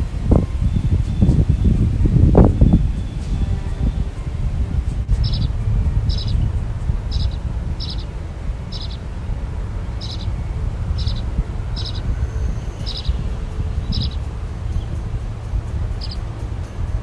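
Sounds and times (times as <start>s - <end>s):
steady low rumble: 0.0s - 17.0s
bird high call: 6.1s - 9.0s, 10.0s - 15.0s.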